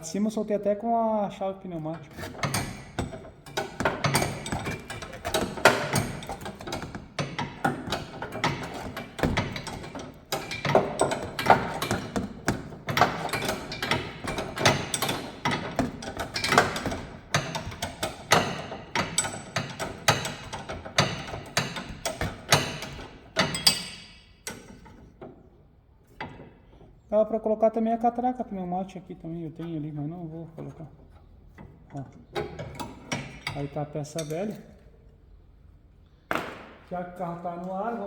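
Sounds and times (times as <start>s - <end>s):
wrench clicking and knocking on metal: 2.0s - 25.3s.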